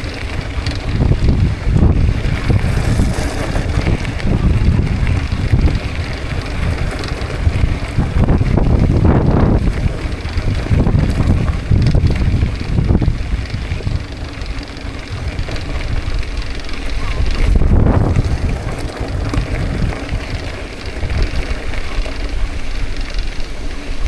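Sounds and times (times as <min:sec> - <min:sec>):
mountain bike rolling rumble: 0:00.0 - 0:24.0
wind buffeting microphone: 0:00.0 - 0:24.0.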